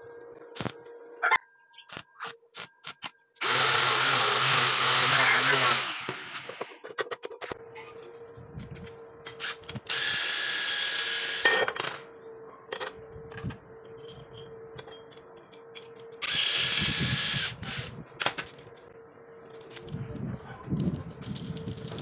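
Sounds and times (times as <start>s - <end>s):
small motorised tool running: 3.4s - 6.7s, 9.3s - 11.5s, 16.2s - 17.9s.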